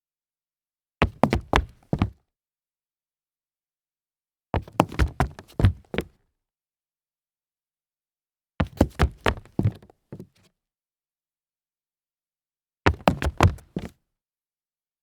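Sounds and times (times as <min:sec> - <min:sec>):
dress shoes stumbling on concrete: 0:01.0 - 0:02.2, 0:12.9 - 0:13.9.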